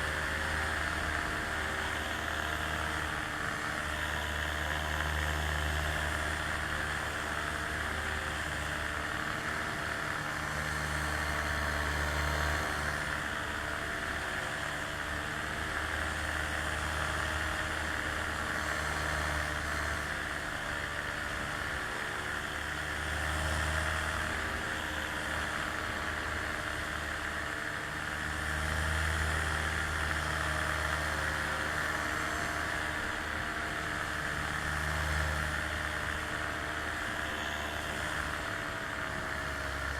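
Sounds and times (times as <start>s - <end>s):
aircraft engine drone: 18.9s - 39.9s.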